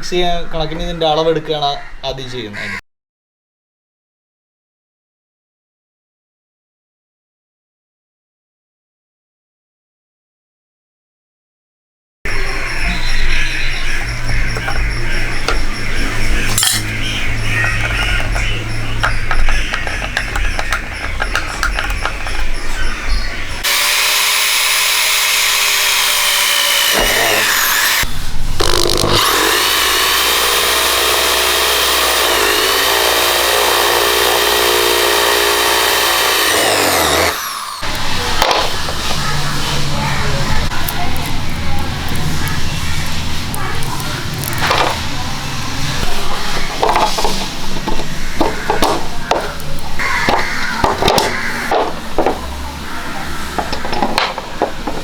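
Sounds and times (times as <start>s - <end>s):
power tool whining: 14.1s - 22.9s, 23.5s - 41.5s.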